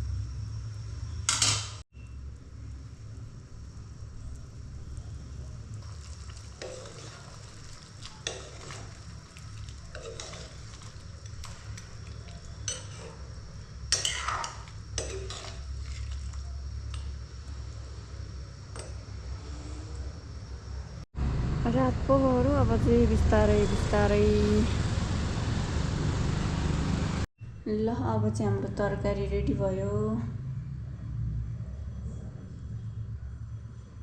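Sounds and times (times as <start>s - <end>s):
faint sizzle: 0.0s - 21.0s
steady low hum: 0.0s - 25.5s
spoon stirring and scraping pot: 5.8s - 17.1s
clinks against pot: 13.9s - 15.6s.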